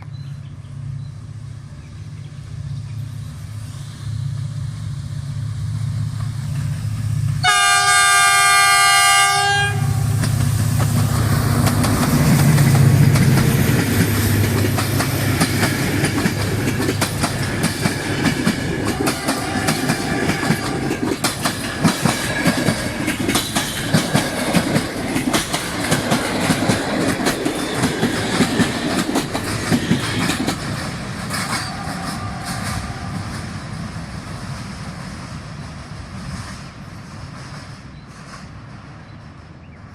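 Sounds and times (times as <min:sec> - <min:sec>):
train horn blast: 0:07.4 - 0:10.2, 0:18.8 - 0:21.1
train wheels clicking on rail joints: 0:10.0 - 0:39.2.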